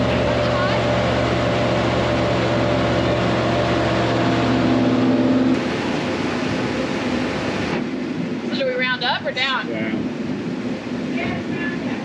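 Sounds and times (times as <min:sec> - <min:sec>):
wood planer running: 0:00.0 - 0:05.6.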